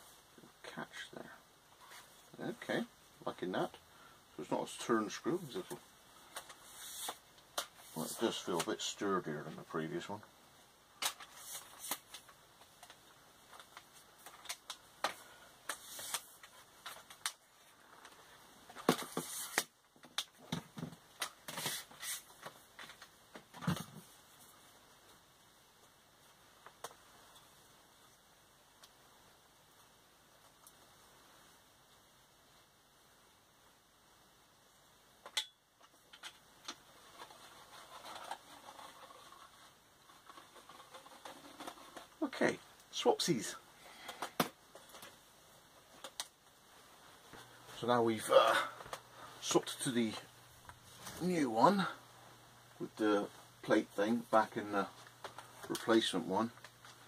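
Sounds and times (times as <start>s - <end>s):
faint rustling and scraping: 0.0s - 3.8s, 4.4s - 10.2s, 11.1s - 19.7s, 35.8s - 57.0s.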